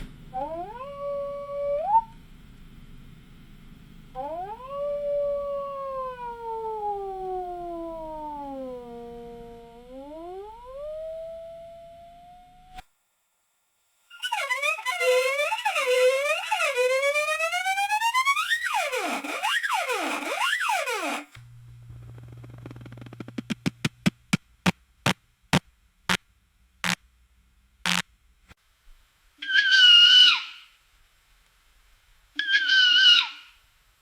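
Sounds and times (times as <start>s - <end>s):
low hum: 0.0s - 12.8s, 21.3s - 28.4s.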